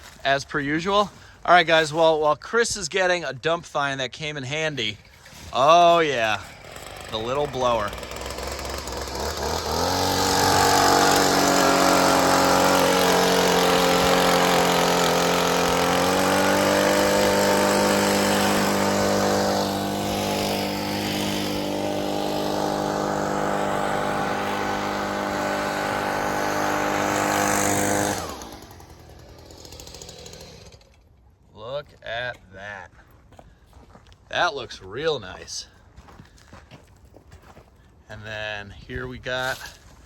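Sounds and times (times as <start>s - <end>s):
leaf blower running: 5.1s - 31.0s.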